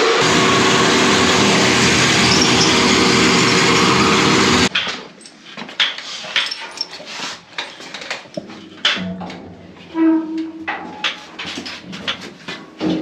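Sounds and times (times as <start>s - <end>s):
power tool running: 0.0s - 4.7s.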